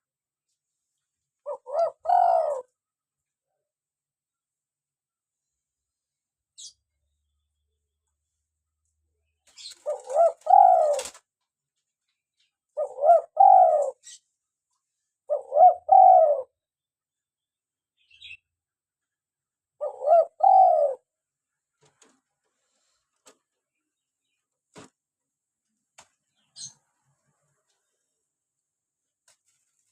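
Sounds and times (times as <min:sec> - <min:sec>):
dove cooing: 0:01.4 - 0:02.8, 0:09.6 - 0:11.2, 0:12.8 - 0:14.2, 0:15.3 - 0:16.6, 0:19.8 - 0:21.1.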